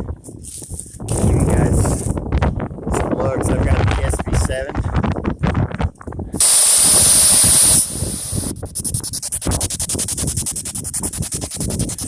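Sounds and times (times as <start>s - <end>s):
radio static hiss: 6.4s - 8.5s
rapid radio sweep chopping: 6.4s - 8.5s.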